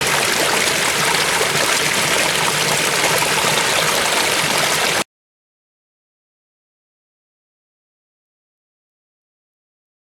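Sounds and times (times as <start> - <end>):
waterfall rushing: 0.0 - 5.0.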